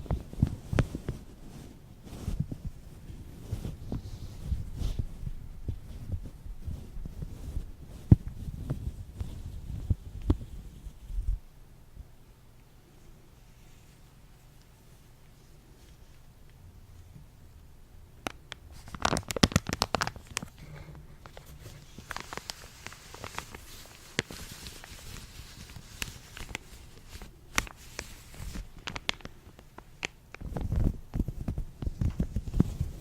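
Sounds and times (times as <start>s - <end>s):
latex gloves snapping and crackling: 18.2s - 20.6s, 21.2s - 33.0s
gloves rubbing hiss: 18.8s - 31.5s.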